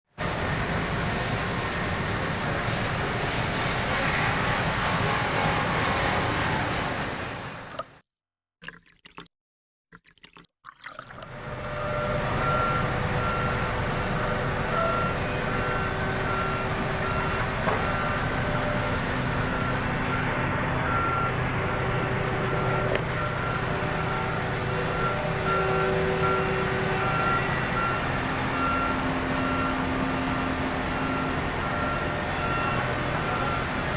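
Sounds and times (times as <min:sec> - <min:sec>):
reversing alarm beeping: 0:11.5 - 0:33.9.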